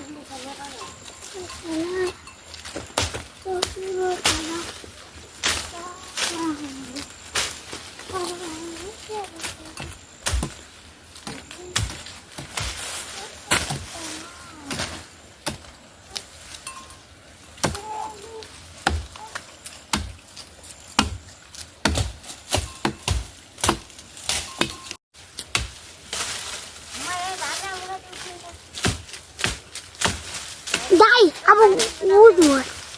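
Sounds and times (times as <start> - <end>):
faint voices: 30.8 - 32.7.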